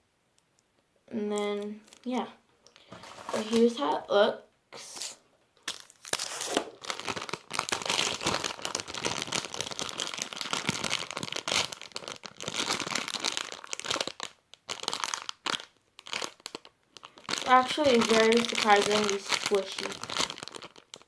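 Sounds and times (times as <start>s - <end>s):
squishy crinkling in hands: 4.9s - 21.0s.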